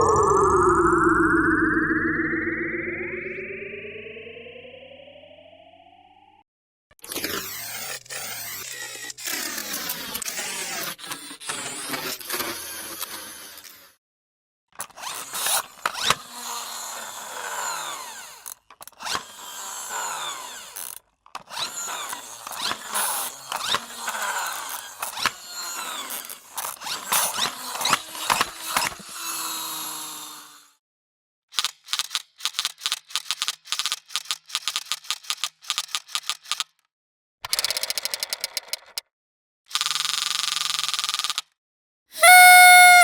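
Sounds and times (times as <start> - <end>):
fast clicks: 31.9 - 36.8, 37.5 - 39.0
falling squeaks: 42.2 - 43.0.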